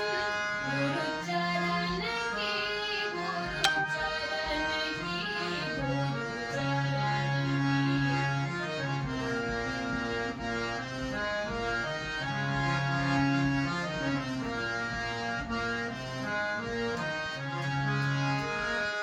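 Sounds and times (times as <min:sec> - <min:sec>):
harmonium melody: 0:00.0 - 0:19.0.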